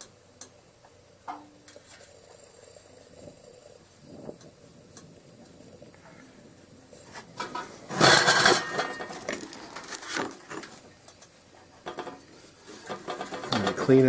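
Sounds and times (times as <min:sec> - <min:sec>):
gas rushing: 0:00.0 - 0:14.0
metal lantern clinking: 0:01.3 - 0:14.0.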